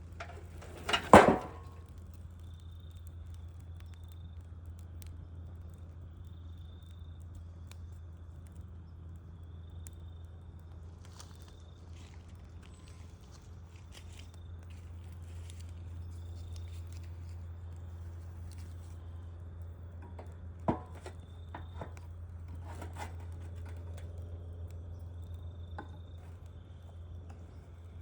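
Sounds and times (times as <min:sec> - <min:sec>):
wood fire crackling: 0:00.0 - 0:28.0.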